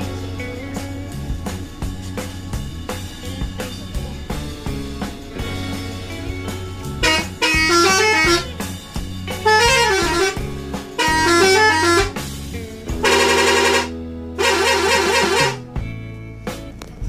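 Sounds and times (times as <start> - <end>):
steady low hum: 0.0 - 9.6
bus horn playing melody: 5.3 - 12.3, 12.9 - 15.8.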